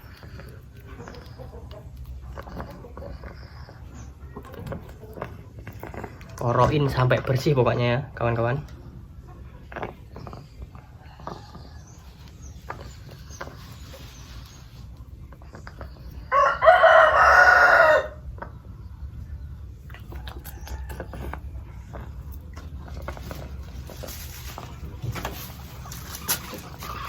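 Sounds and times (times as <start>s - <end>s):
rooster crowing: 16.3s - 18.2s.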